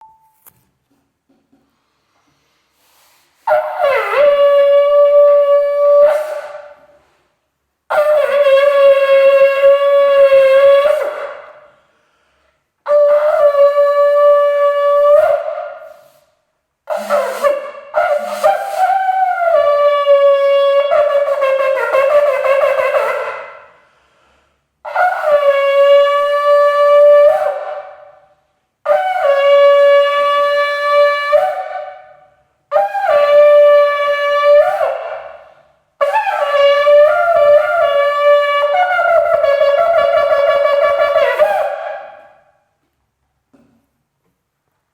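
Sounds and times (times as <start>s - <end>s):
person breathing: 1.6s - 3.5s, 11.7s - 12.8s, 23.7s - 24.8s
shofar blasts: 3.4s - 7.2s, 7.9s - 11.7s, 12.8s - 16.3s, 16.9s - 23.7s, 24.8s - 42.8s.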